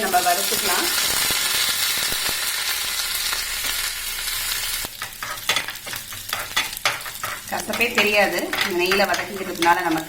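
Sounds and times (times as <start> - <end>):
flowers sizzling in hot ghee: 0.0 - 10.0.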